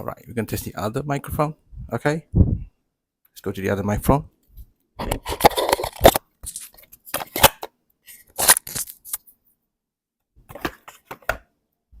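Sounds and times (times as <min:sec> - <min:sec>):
microphone handling noise: 0:01.8 - 0:02.7.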